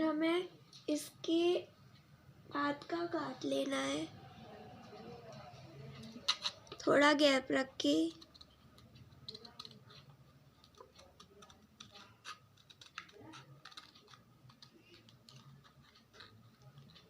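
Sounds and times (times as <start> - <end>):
scissors cutting cardboard: 8.1 - 17.0.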